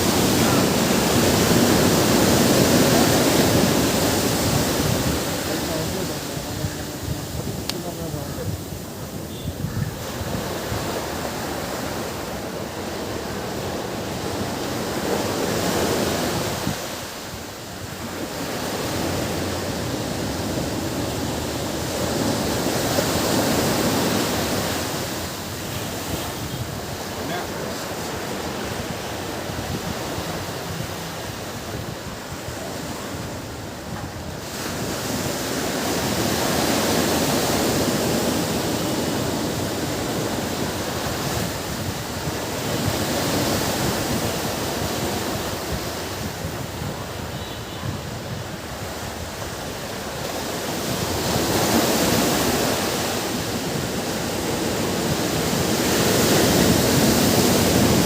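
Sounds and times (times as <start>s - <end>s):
waves breaking on beach: 0.0s - 58.0s.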